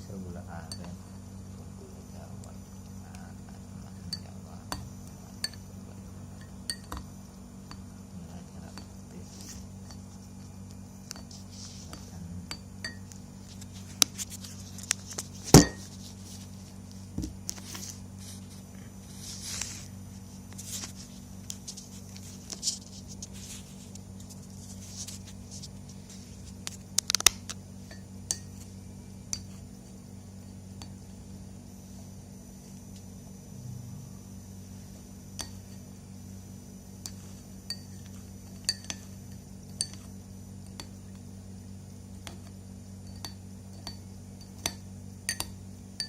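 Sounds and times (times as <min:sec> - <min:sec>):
steady low hum: 0:00.0 - 0:46.0
glassware and utensils clinking: 0:00.7 - 0:01.0, 0:04.0 - 0:05.7, 0:11.9 - 0:13.1, 0:15.5 - 0:15.9, 0:37.1 - 0:40.1, 0:43.0 - 0:45.6.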